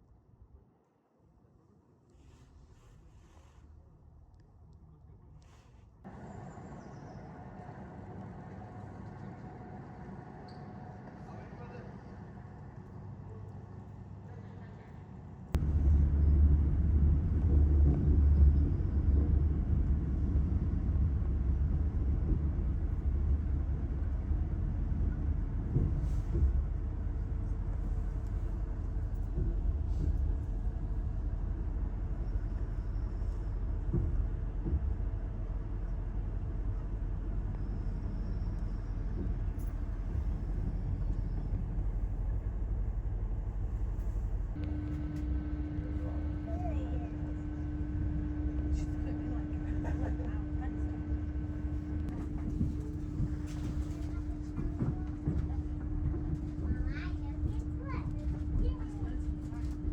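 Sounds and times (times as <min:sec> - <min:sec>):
train rumbling: 0:06.1 - 0:59.9.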